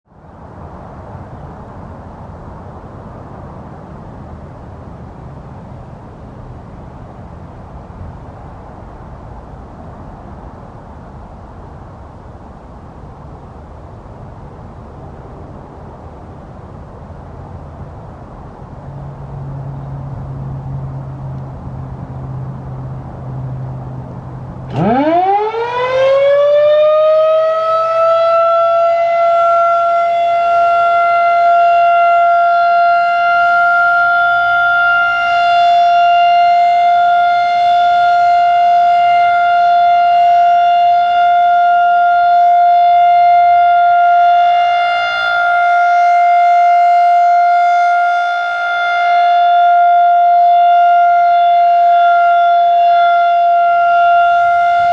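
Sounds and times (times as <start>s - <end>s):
warning siren wailing: 24.7s - 54.9s.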